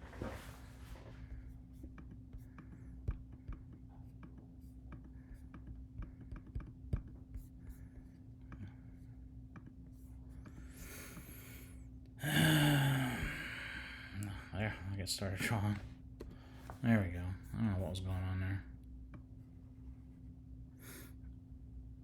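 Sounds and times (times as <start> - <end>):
low electrical hum: 0.0 - 22.0
person exhaling loudly: 12.2 - 14.2.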